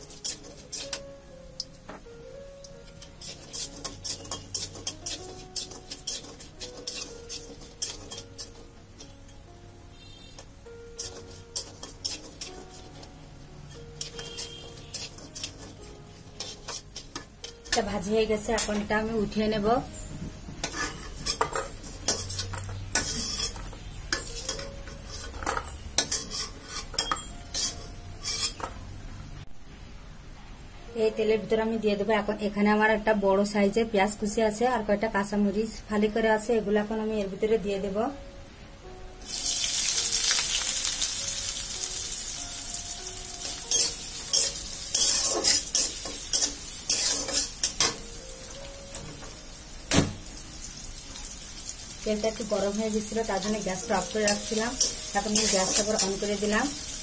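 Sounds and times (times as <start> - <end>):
metal utensil scraping frying pan: 0.0 - 1.0, 2.8 - 9.2, 10.0 - 13.1, 13.7 - 18.9, 20.6 - 28.8, 39.3 - 48.1, 52.0 - 57.0
oil sizzling: 0.0 - 1.2, 2.0 - 29.0, 39.2 - 57.0.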